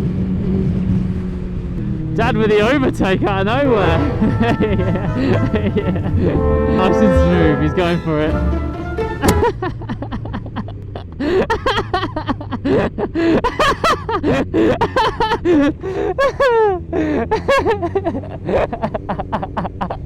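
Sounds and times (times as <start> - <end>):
man laughing hard: 3.8 - 6.4, 9.3 - 20.0
motorcycle engine humming: 8.6 - 9.9.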